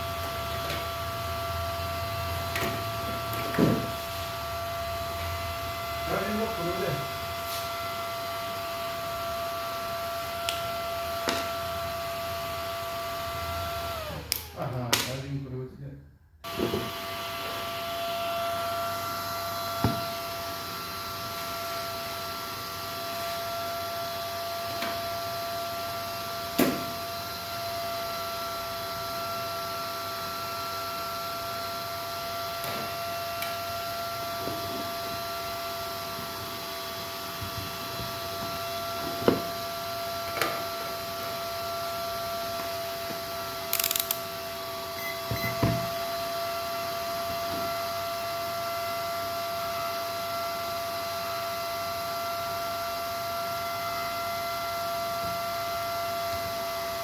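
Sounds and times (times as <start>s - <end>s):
sharp clicks: 43.7s - 44.2s.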